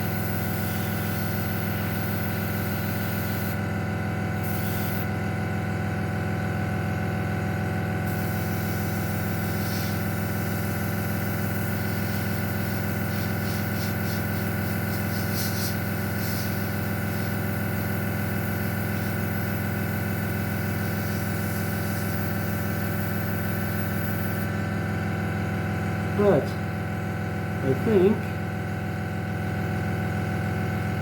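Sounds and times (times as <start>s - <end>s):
airbrush spraying hiss: 0.0s - 3.6s, 4.4s - 5.1s, 8.0s - 24.5s
compressor electric hum: 0.0s - 31.0s.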